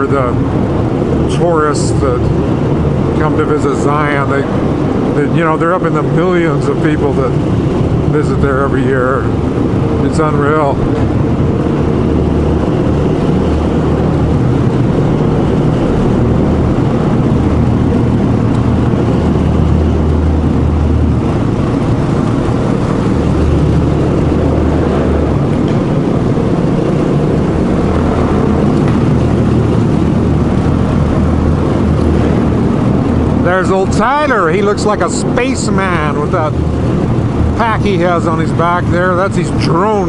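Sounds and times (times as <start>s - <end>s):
wind and road noise: 0.0s - 40.0s
motorcycle engine running: 9.2s - 34.0s.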